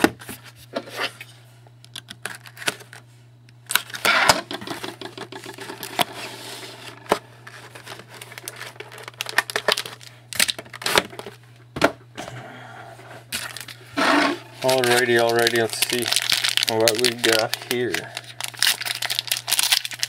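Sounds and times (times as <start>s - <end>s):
steady low hum: 0.0s - 20.0s
packaging clicks and crinkling: 1.9s - 3.0s, 7.4s - 11.4s, 13.4s - 13.8s, 14.6s - 20.0s
packaging tearing: 7.5s - 11.3s, 13.4s - 20.0s.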